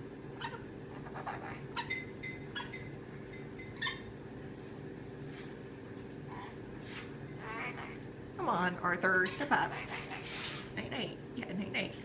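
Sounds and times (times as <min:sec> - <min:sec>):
parrot chirping: 0:00.4 - 0:04.1, 0:07.3 - 0:08.0, 0:09.2 - 0:10.2.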